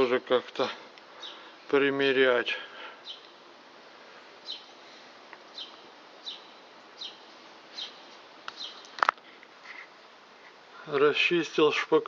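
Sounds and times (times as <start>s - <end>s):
faint steady hiss: 0.0s - 12.0s
small bird chirping: 1.2s - 1.5s, 3.0s - 3.4s, 4.2s - 4.8s, 5.4s - 9.0s.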